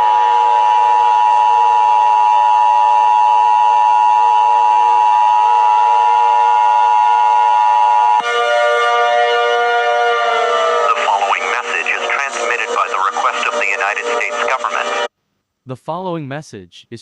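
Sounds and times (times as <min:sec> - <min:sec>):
loud steady electronic tone: 0:10.1 - 0:15.1.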